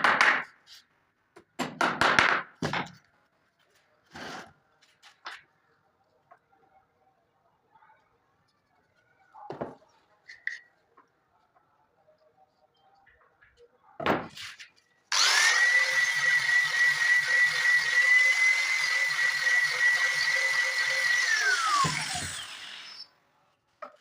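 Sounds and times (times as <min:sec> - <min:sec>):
power tool motor whine: 0:15.1 - 0:23.1.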